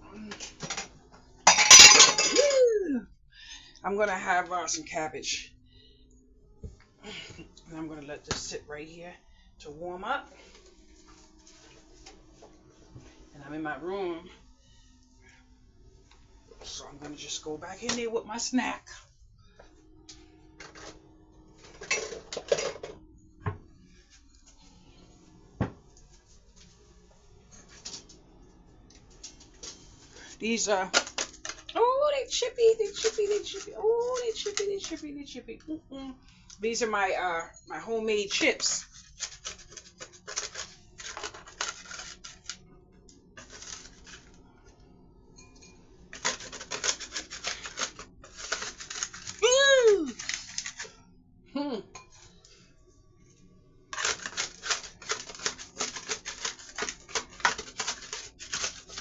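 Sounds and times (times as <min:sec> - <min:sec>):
dishes and utensils clattering: 0:00.6 - 0:02.7, 0:21.6 - 0:23.0
chips being chewed crunching: 0:54.0 - 0:59.0.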